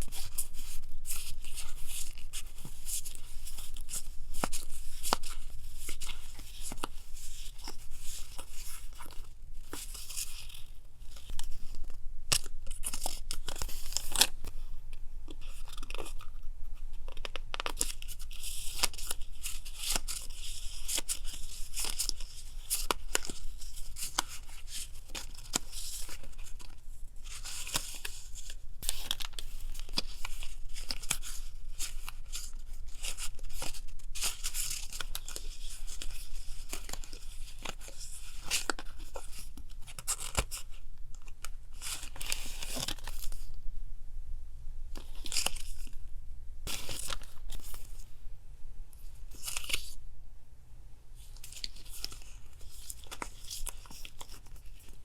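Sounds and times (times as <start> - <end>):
paper ripping and rustling: 17.2 - 40.8, 41.4 - 43.5, 46.7 - 48.0, 49.3 - 50.0
steady low hum: 40.7 - 53.9.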